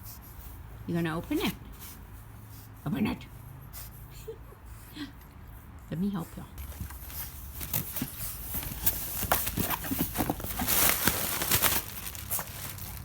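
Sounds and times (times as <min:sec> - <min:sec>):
cardboard box being torn open: 0:07.6 - 0:13.0.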